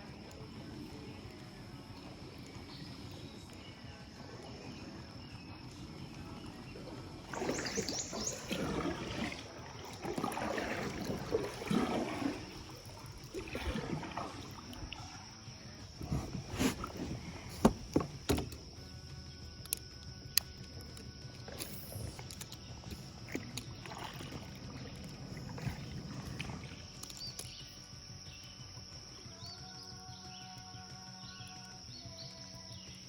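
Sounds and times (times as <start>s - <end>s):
water splashing around kayak: 0.0s - 29.7s.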